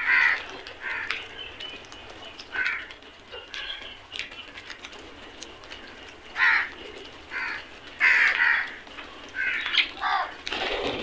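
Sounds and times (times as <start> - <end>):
crows cawing: 0.0 - 1.2, 2.5 - 3.7, 6.3 - 10.4.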